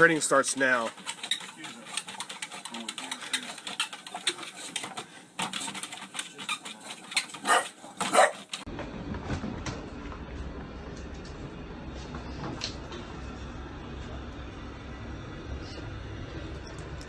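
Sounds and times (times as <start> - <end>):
dog yipping: 7.4 - 8.5.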